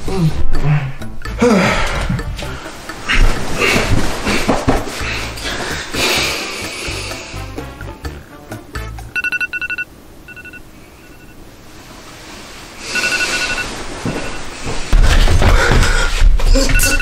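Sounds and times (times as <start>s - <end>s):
background music with bass beat: 4.9s - 9.2s
alarm beeping in quick pulses: 9.1s - 11.4s, 12.9s - 14.4s, 16.7s - 17.0s.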